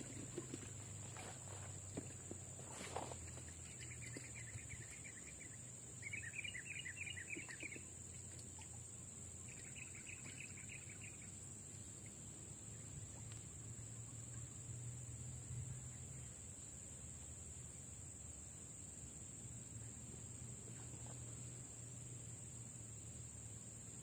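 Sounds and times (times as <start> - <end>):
rapid chirping trills: 3.2 - 11.4.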